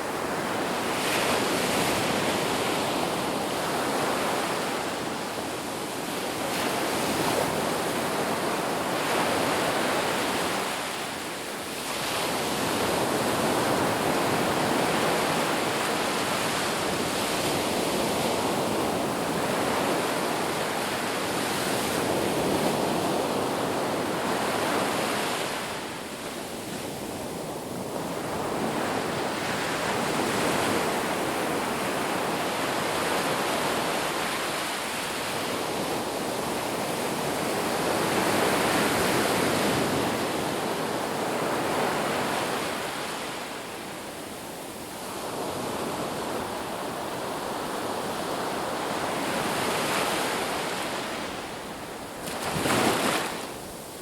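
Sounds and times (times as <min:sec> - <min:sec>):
sea waves washing onto shore: 0:00.0 - 0:54.0.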